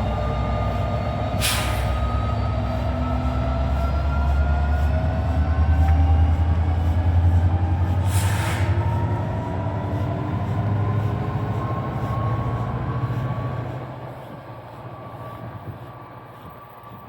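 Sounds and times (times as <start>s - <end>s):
train rumbling by: 0.0s - 17.0s
train whine rising in pitch: 0.0s - 17.0s
brief hiss: 1.4s - 2.0s, 8.1s - 8.8s.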